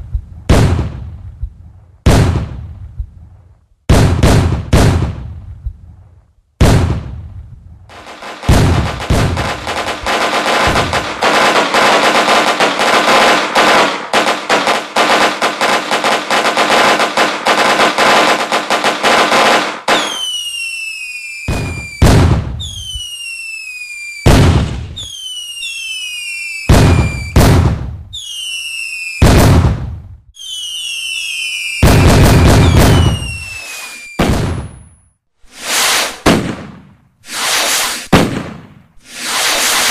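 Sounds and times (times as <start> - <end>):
fireworks crackling and banging: 3.9 - 5.7, 7.9 - 39.9
whistling fireworks: 7.9 - 36.6, 37.2 - 39.9.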